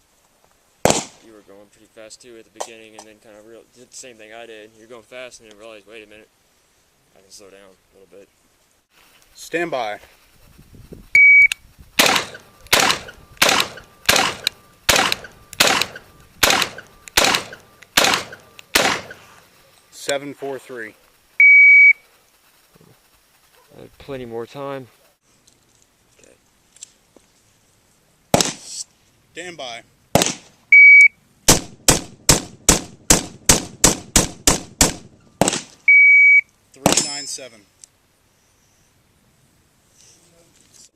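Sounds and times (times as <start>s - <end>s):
rifle shots with echo: 0.8s - 1.3s, 12.0s - 19.3s, 28.3s - 28.7s, 30.1s - 30.5s, 31.5s - 35.8s, 36.8s - 37.2s
shot timer beep: 11.2s - 11.6s, 30.8s - 31.1s, 35.9s - 36.4s.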